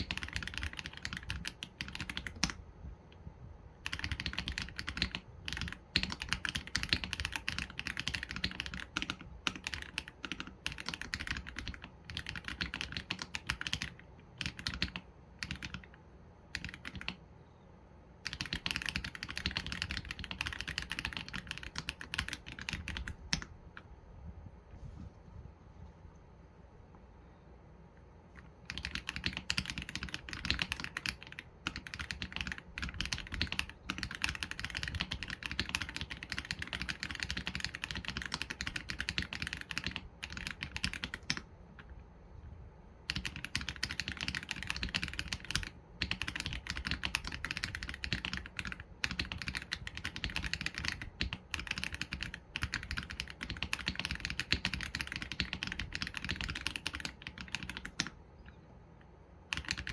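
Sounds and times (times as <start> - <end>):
typing on mechanical keyboard: 0.0 - 2.6, 3.7 - 17.2, 18.2 - 23.9, 28.3 - 41.9, 43.0 - 58.2, 59.5 - 59.9.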